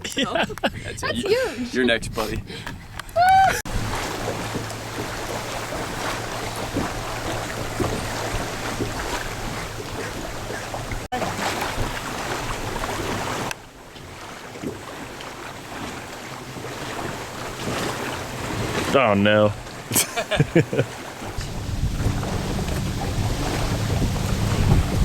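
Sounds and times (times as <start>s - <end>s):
wind buffeting microphone: 0.0s - 13.1s, 19.6s - 25.0s
low hum: 20.4s - 25.0s.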